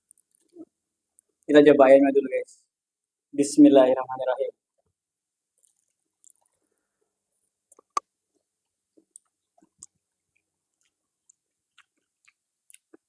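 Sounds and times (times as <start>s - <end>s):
crunching fried chicken: 9.0s - 13.0s.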